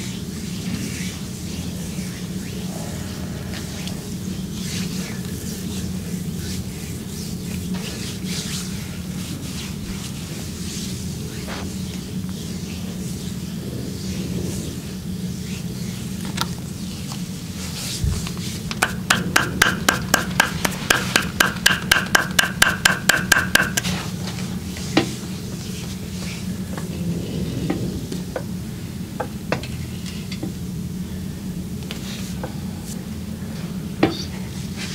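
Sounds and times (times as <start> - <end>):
steady low hum: 0.0 - 34.9.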